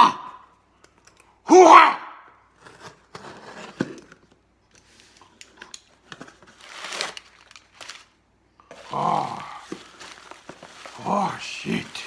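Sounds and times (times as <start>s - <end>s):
cardboard packaging rustling: 5.0s - 12.0s.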